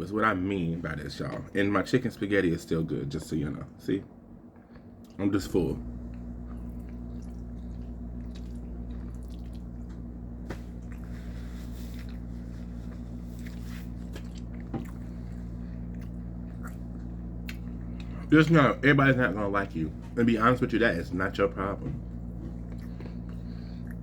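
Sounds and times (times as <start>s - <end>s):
low hum: 0.0s - 24.0s
man chewing food: 5.9s - 18.3s, 21.8s - 24.0s.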